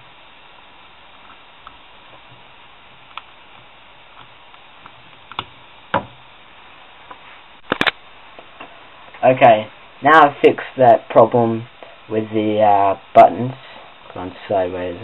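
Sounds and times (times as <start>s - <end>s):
steady hiss: 0.0s - 15.0s.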